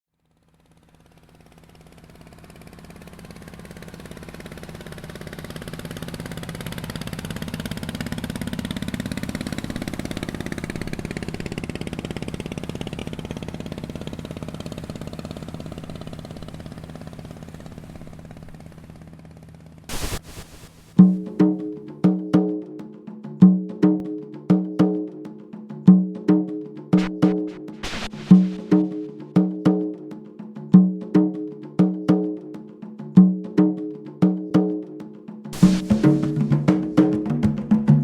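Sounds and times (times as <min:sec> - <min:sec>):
engine with pulsing tone: 0:00.1 - 0:20.0, 0:26.7 - 0:30.3, 0:35.6 - 0:38.0.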